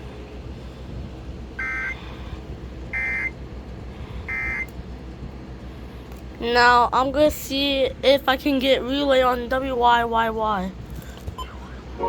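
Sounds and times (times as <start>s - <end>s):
low steady hum: 0.0s - 12.0s
digital data tone bursts: 3.0s - 3.3s.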